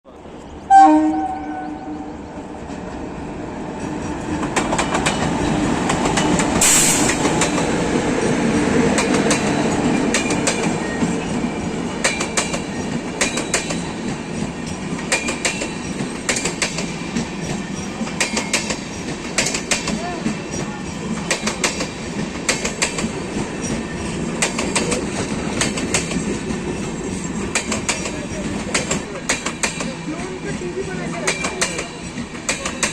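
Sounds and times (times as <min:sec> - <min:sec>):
train rumbling past: 0:00.1 - 0:32.9
train horn: 0:00.7 - 0:02.3
train wheels clacking on rails: 0:02.5 - 0:32.9.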